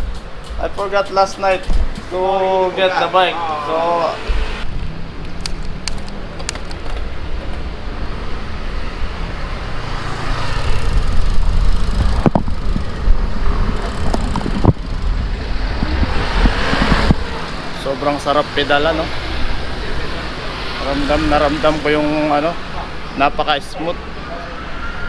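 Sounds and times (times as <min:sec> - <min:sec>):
loud knocks: 0:00.0 - 0:02.6
wind noise on microphone: 0:00.0 - 0:02.6, 0:04.2 - 0:20.4
road traffic: 0:00.0 - 0:25.0
sharp clicks: 0:05.2 - 0:07.6, 0:10.4 - 0:17.7.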